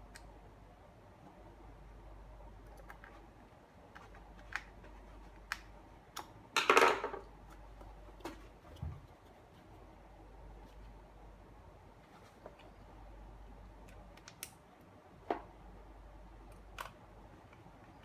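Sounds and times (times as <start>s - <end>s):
plastic parts clicking and knocking: 6.2s - 7.3s.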